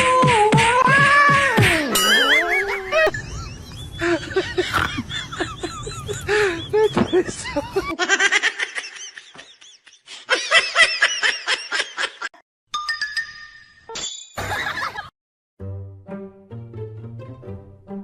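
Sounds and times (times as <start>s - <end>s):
pulsing laughter: 1.7s - 12.3s.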